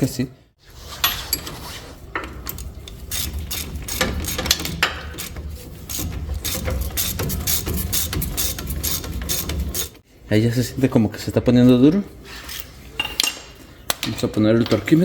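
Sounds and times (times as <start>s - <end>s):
ratchet wrench clicking: 2.5s - 10.0s.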